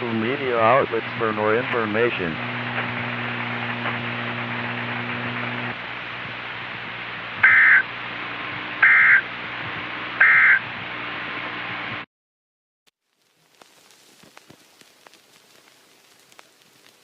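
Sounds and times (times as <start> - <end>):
radio static: 0.0 - 6.4, 7.4 - 7.9, 8.5 - 10.7
digital data tone bursts: 7.4 - 7.8, 8.8 - 9.2, 10.2 - 10.6.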